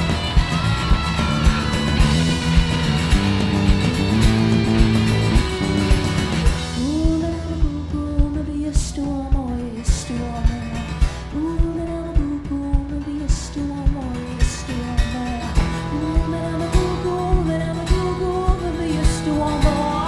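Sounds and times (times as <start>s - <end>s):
drum beat: 0.0s - 14.1s
guitar: 0.0s - 20.0s.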